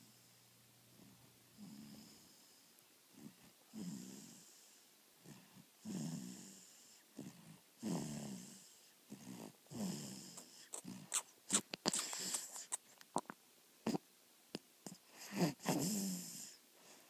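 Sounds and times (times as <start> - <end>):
person snoring: 3.2 - 4.6, 5.3 - 12.8, 14.9 - 16.6.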